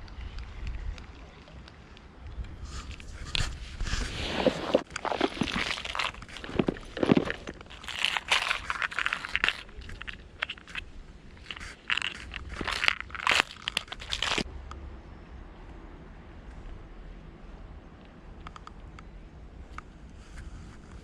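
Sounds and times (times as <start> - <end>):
crunching footsteps: 2.7 - 14.5.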